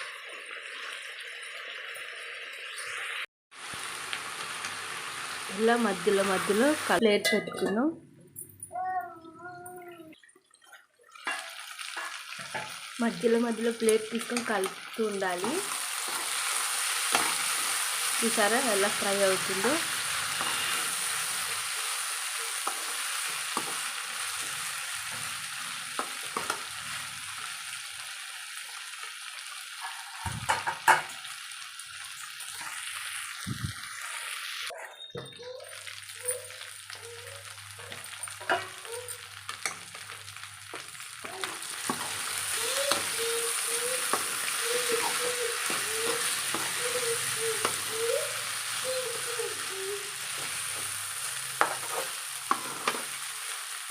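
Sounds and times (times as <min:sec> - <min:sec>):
vegetables sizzling in oil: 0:00.0 - 0:07.8, 0:11.0 - 0:53.9
spatula scraping pan: 0:18.9 - 0:21.2.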